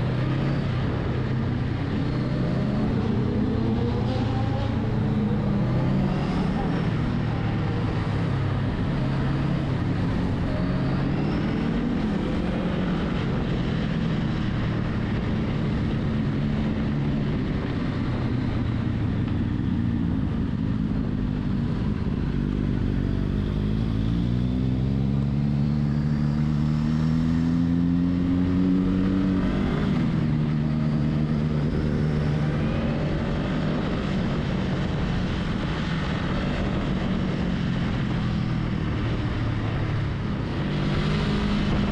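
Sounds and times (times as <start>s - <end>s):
motorcycle engine revving: 22.5s - 41.9s.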